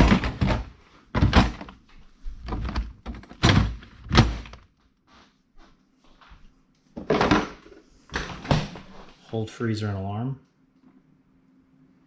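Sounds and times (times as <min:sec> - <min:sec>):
plastic thunks and knocks: 0:00.0 - 0:01.8, 0:02.4 - 0:04.7.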